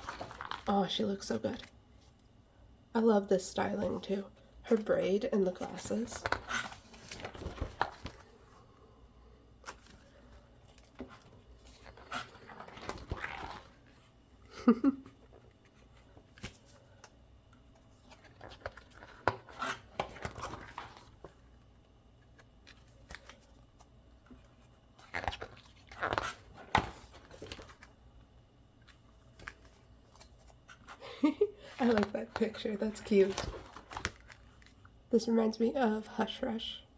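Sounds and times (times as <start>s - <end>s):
paper pages rustling: 0.0s - 0.7s, 4.8s - 8.6s, 9.6s - 14.1s, 15.4s - 17.2s, 17.8s - 21.4s, 22.4s - 27.9s, 28.8s - 34.8s.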